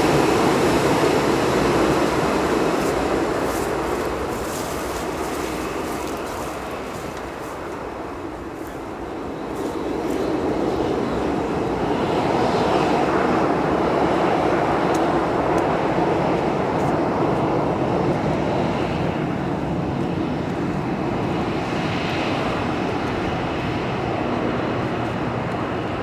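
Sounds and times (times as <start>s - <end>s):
high engine whine: 0.0s - 26.0s
jet engines running: 0.0s - 26.0s.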